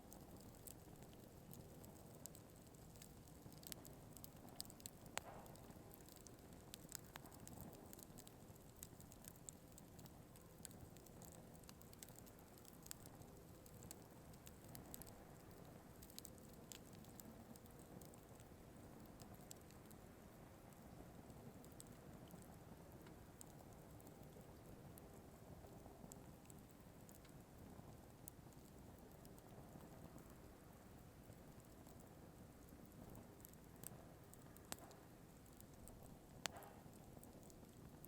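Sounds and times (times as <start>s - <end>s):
firewood crackling and popping: 0.0s - 38.0s.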